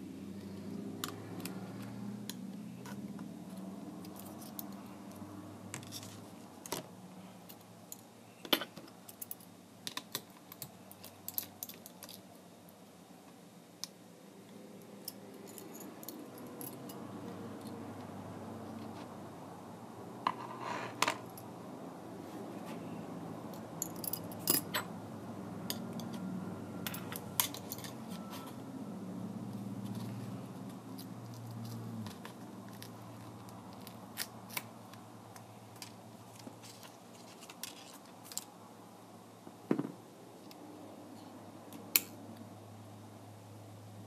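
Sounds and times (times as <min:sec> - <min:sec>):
small clicks of parts handled: 0:31.3 - 0:38.5.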